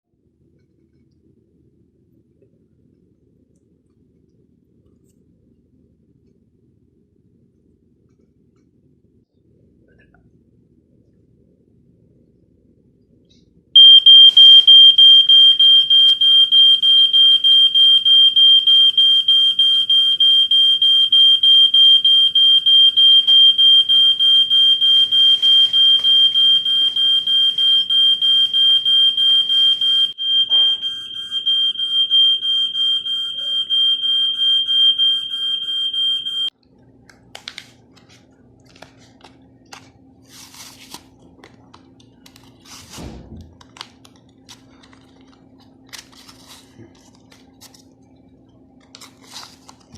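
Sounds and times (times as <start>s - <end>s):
smoke alarm pulsing beep: 13.8s - 36.5s.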